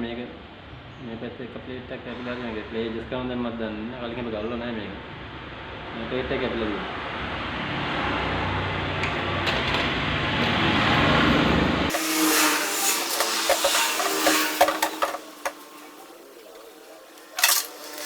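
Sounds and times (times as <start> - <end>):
workshop hum: 11.9 - 18.0
metal gearbox parts clicking: 17.2 - 18.0.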